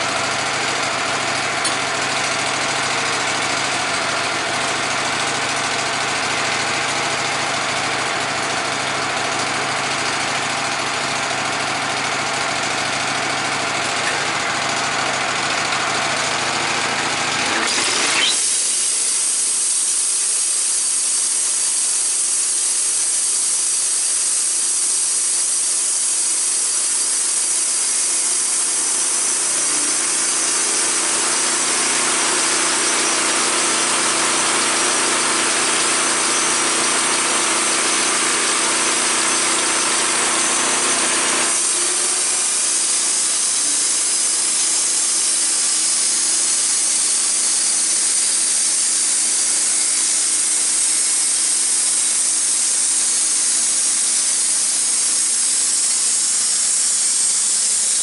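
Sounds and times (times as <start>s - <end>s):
sawmill running: 0.0s - 58.0s
saw blade cutting log: 13.4s - 19.7s, 24.8s - 58.0s.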